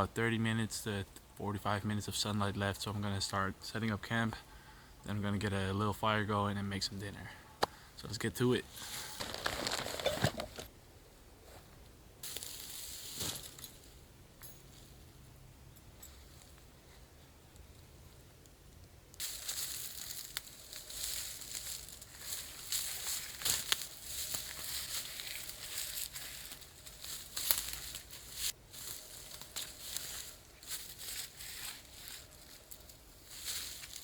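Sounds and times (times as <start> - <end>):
dry rustling and crunching: 8.7 - 10.7, 12.2 - 13.9, 19.2 - 34.0.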